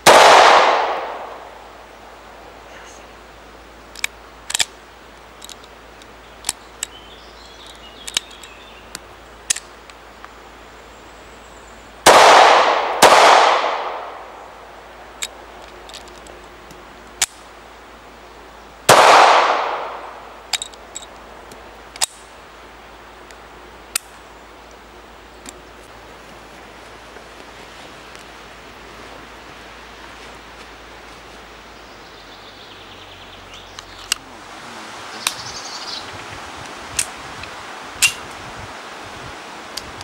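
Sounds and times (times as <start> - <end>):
blank pistol shots with echo: 0.0 - 1.7, 12.1 - 14.4, 18.9 - 20.4
sharp clicks: 7.6 - 10.0.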